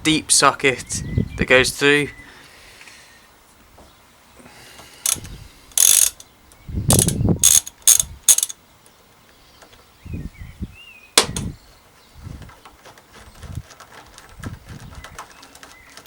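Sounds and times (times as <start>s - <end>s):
socket ratchet clicking: 5.1s - 6.2s, 6.9s - 8.6s.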